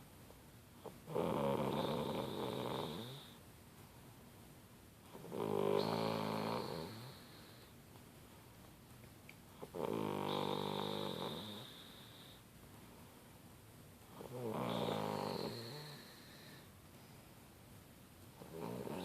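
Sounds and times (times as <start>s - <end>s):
girl snoring: 1.1s - 3.4s, 5.1s - 7.6s, 9.6s - 12.2s, 14.2s - 16.7s, 18.4s - 19.0s.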